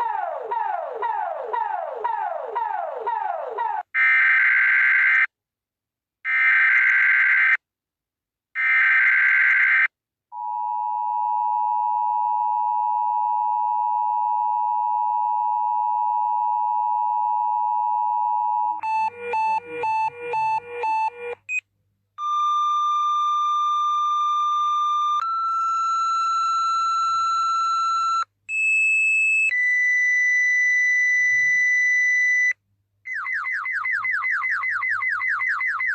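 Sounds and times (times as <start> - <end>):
warbling alarm bursts: 0.0 - 3.8, 18.8 - 21.4
stepping electronic tones: 18.8 - 21.6.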